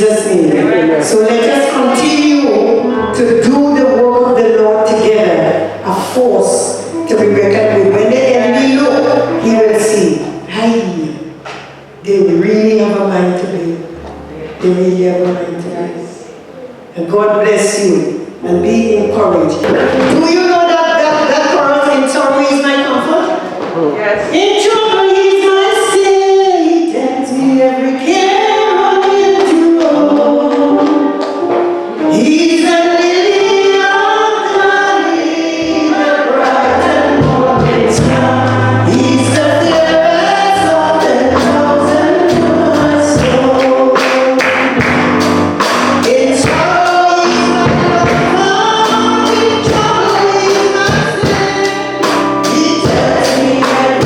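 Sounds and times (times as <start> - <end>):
choir singing gospel song: 0.0 - 12.2, 18.4 - 54.0
bass guitar: 2.9 - 12.8, 36.5 - 54.0
drums: 36.4 - 54.0.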